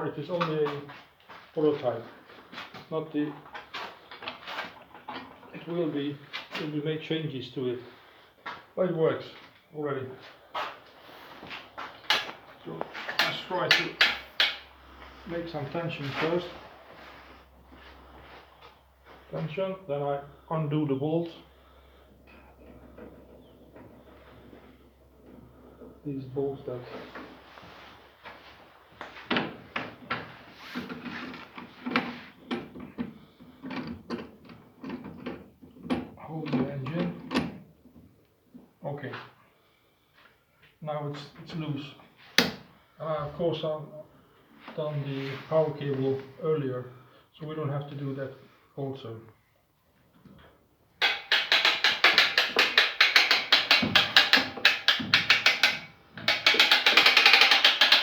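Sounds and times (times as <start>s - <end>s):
metallic knocks and clicks: 13.0s - 14.7s, 51.0s - 58.0s
ratchet clicking rapidly: 56.3s - 58.0s.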